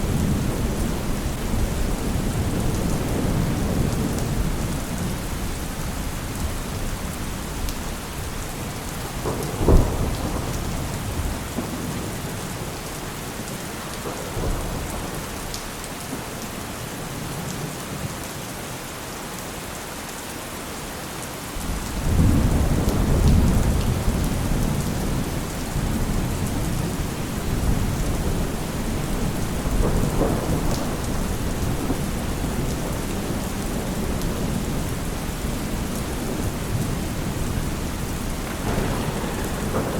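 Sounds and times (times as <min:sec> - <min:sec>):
low thunder rumble: 0:00.0 - 0:13.1, 0:21.6 - 0:39.9
heavy rain falling: 0:00.0 - 0:39.9
sharp thunder clap: 0:09.0 - 0:12.1, 0:36.2 - 0:39.9.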